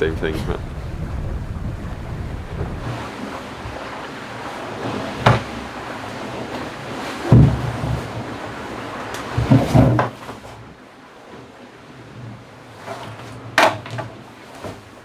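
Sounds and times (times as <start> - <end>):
wind on microphone: 0.0 - 4.0
water washing along hull: 0.0 - 15.0.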